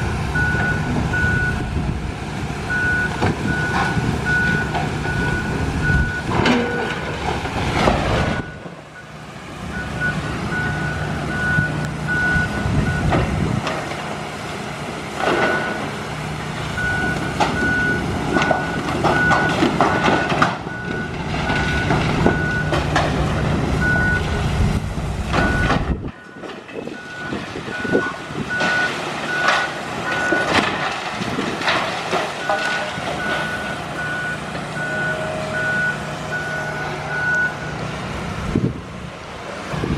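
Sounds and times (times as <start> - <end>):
backup alarm beeping: 0.4 - 1.7, 2.7 - 6.9, 9.8 - 13.1, 25.4 - 29.5, 32.4 - 37.7
debris clanking and crunching: 2.7 - 8.9, 13.0 - 14.5, 15.1 - 24.5, 25.1 - 35.7.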